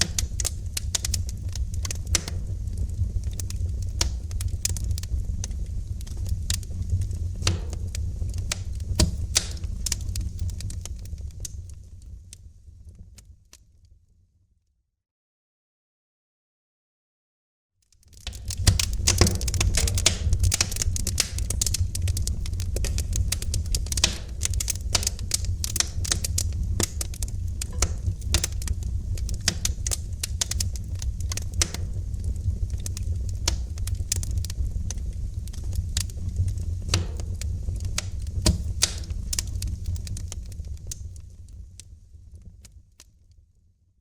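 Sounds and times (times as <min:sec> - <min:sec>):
wood fire crackling: 0:00.0 - 0:13.6, 0:17.8 - 0:43.1
low fire rumble: 0:00.0 - 0:13.7, 0:18.0 - 0:43.5.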